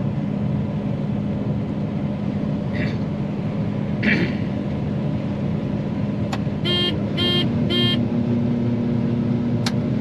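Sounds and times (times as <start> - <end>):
combine harvester engine drone: 0.0 - 10.0
short electronic beeps: 6.7 - 8.0.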